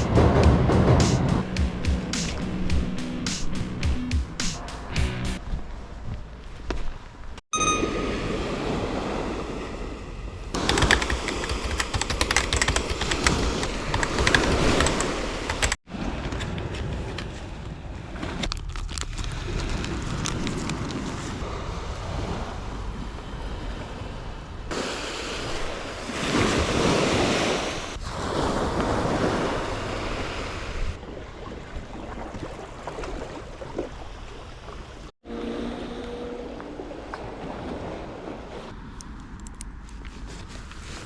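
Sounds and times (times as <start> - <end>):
sea waves washing ashore: 0.0 - 1.4, 7.8 - 16.4, 19.5 - 39.0.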